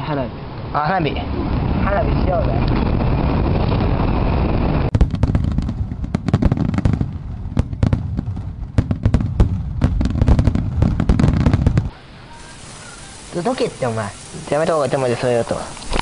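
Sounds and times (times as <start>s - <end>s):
fireworks crackling: 0.0s - 16.0s
low rumble: 0.6s - 11.9s.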